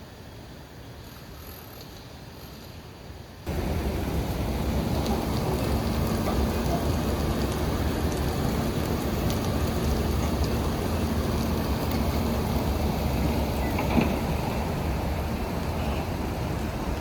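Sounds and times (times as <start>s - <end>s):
creek water over stones: 3.4s - 17.0s.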